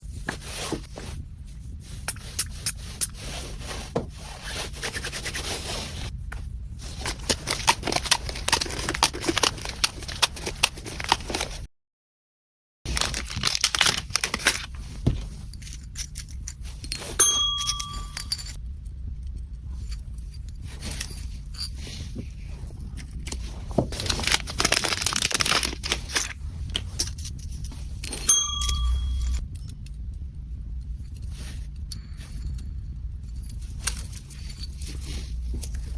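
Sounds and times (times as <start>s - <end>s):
packaging crinkling and tearing: 7.0s - 11.7s, 12.9s - 16.3s, 23.2s - 27.4s.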